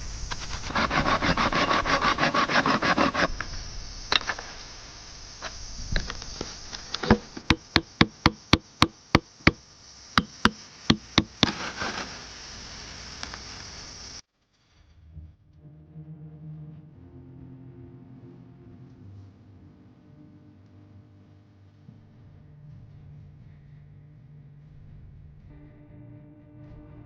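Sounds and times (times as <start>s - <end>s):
fast rasping strokes on wood: 0.4s - 3.4s, 7.1s - 9.6s, 10.2s - 12.0s
sharp knocks on wood: 7.0s - 9.6s, 10.2s - 11.5s.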